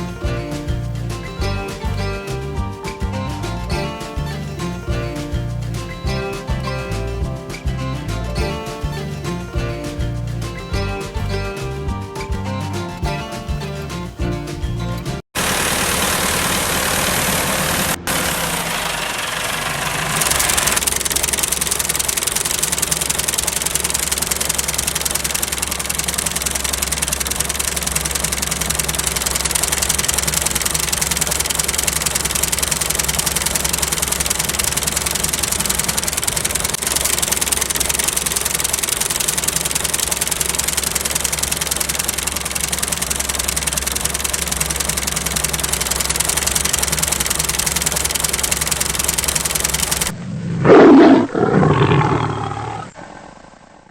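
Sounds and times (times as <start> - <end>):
small engine running: 15.0 - 50.2.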